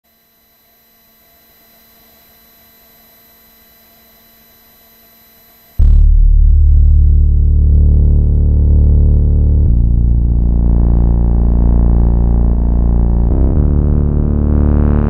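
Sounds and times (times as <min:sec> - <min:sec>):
faint electrical hum and hiss: 0:00.1 - 0:05.8
deep synthesizer tone: 0:05.8 - 0:15.0.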